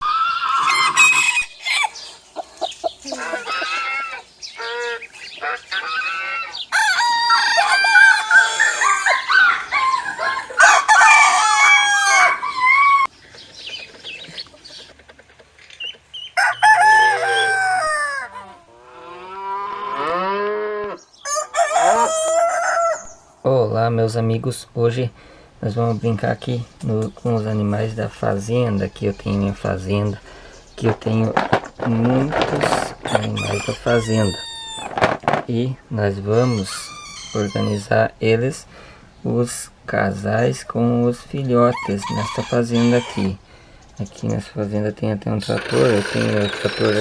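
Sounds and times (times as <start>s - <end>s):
roosters crowing: 0.0s - 2.1s, 3.1s - 19.6s, 21.2s - 23.1s, 33.0s - 35.0s, 36.4s - 37.9s, 41.7s - 43.4s, 45.5s - 47.0s
chickens clucking: 0.4s - 18.2s, 45.5s - 47.0s.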